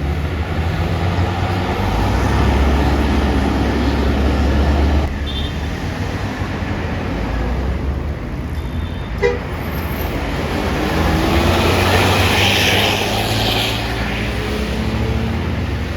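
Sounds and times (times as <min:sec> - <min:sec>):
diesel bus engine passing: 0:00.0 - 0:08.5, 0:09.2 - 0:15.9.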